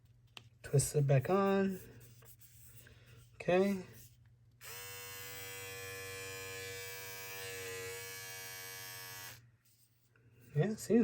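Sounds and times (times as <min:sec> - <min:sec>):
electric groomer buzzing: 0:04.6 - 0:09.4.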